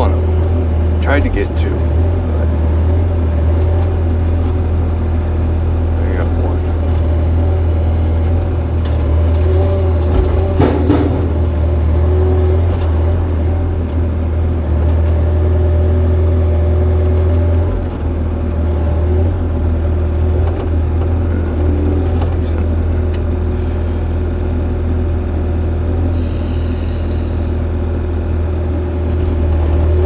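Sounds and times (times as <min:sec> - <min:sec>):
excavator diesel engine running: 0:00.0 - 0:30.0
short knock: 0:10.1 - 0:11.7.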